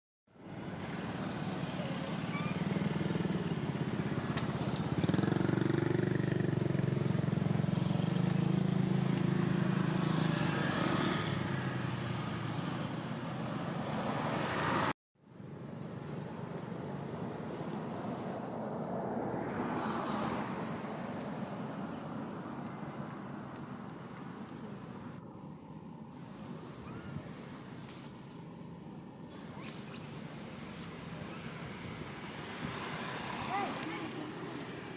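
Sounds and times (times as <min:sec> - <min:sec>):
vehicle engine running: 0:00.4 - 0:14.0.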